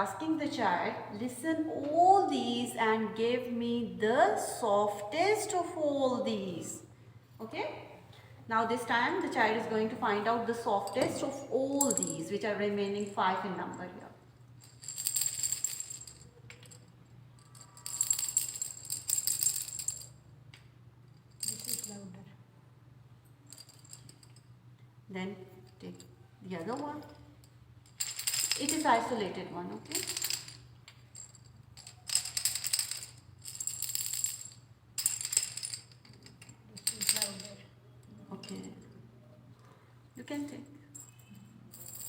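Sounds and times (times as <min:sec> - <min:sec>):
cylinders rattling when shaken: 0:10.6 - 0:20.2, 0:21.2 - 0:22.1, 0:26.6 - 0:37.6.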